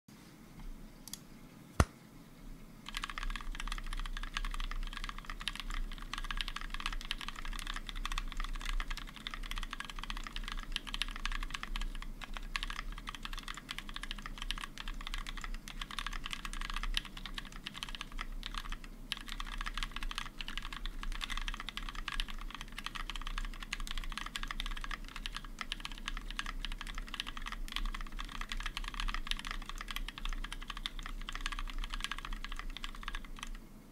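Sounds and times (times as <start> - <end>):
mechanical keyboard typing: 2.9 - 33.6.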